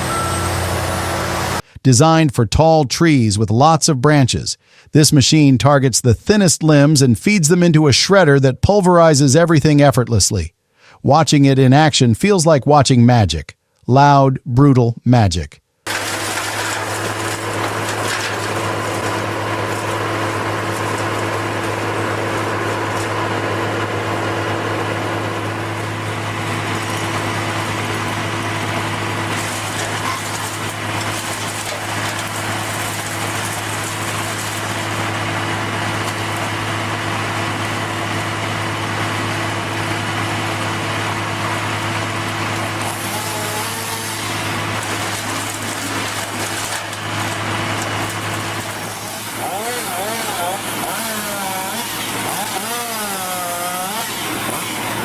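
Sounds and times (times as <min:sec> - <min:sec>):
heavy machine engine running: 0:00.0 - 0:01.6, 0:15.9 - 0:55.0.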